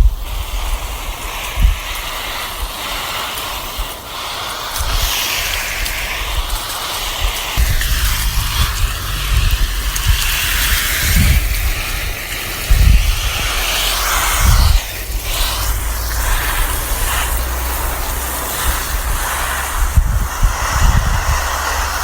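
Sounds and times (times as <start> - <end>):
garden hose spraying water: 0.0 - 22.0
wind buffeting microphone: 6.2 - 22.0.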